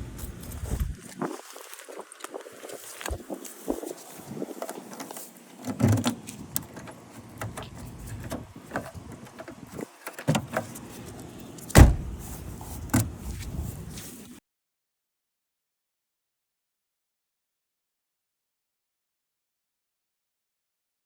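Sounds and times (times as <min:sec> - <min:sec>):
clicks and rattles on car door: 0:04.6 - 0:10.8, 0:11.7 - 0:12.2
car door thump: 0:11.7 - 0:12.2.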